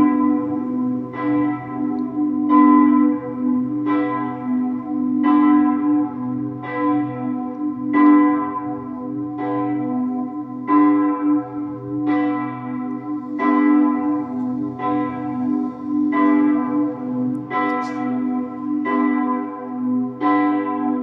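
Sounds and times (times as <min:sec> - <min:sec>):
church bells ringing: 0:00.0 - 0:21.0.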